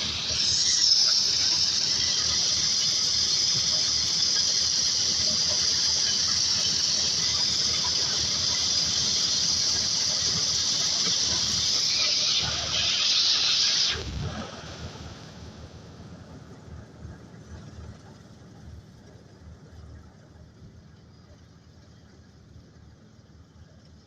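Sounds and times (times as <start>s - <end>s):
corn sheller running: 0.0s - 14.6s.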